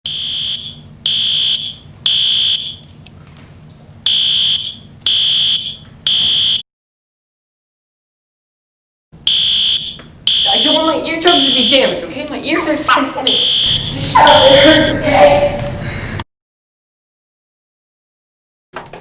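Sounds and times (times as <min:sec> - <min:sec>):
fire alarm beeps: 0:00.0 - 0:02.9, 0:04.1 - 0:06.6, 0:09.2 - 0:12.0, 0:13.3 - 0:15.0.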